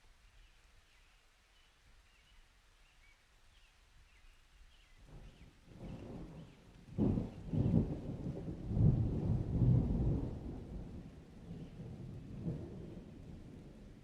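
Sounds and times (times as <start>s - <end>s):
thunder crack and rumble: 5.7s - 14.0s.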